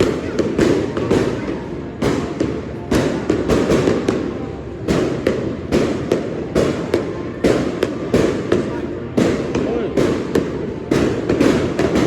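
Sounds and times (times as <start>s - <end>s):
fireworks bursting: 0.0s - 12.0s.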